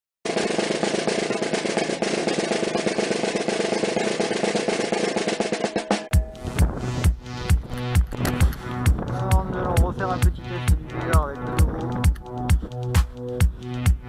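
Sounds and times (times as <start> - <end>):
snare drum roll: 0.3 - 7.2
electronic beat with bass drum: 5.8 - 14.0.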